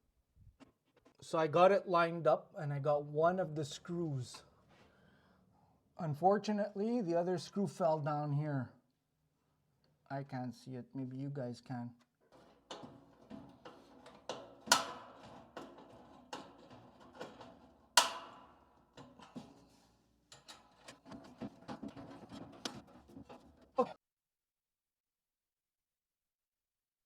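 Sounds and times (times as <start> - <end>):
metal stove pipe clinking: 12.2 - 23.8.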